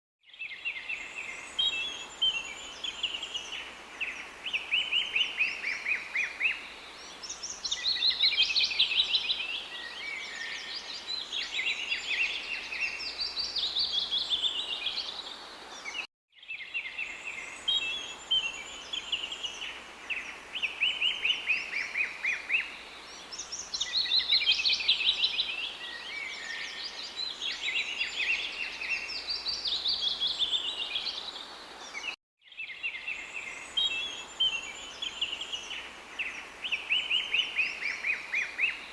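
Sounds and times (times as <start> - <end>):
songbirds singing: 0.2 - 38.9.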